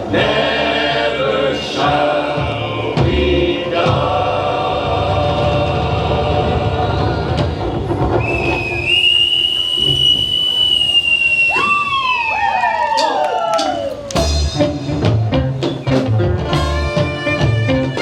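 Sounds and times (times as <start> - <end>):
steady drum beat: 1.7 - 8.9, 13.0 - 18.0
live band music: 13.0 - 18.0.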